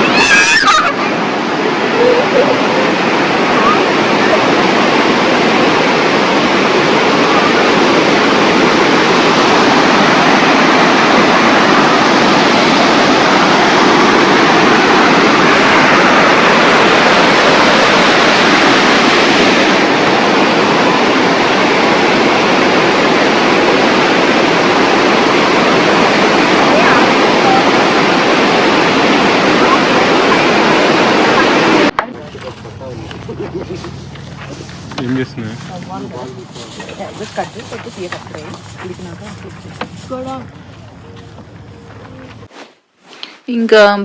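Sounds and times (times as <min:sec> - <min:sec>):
waterfall rushing water: 0:00.0 - 0:38.8.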